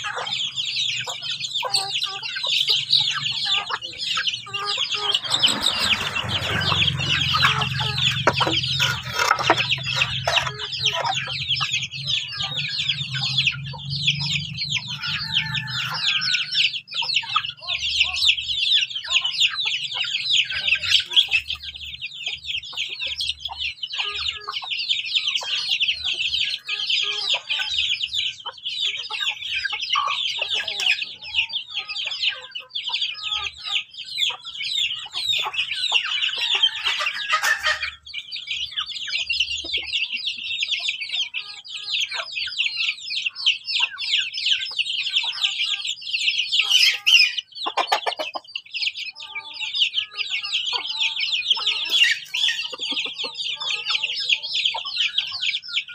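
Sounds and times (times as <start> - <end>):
chicks peeping: 0.0 - 55.9
hens clucking: 0.0 - 55.9
loud bird call: 0.0 - 55.9.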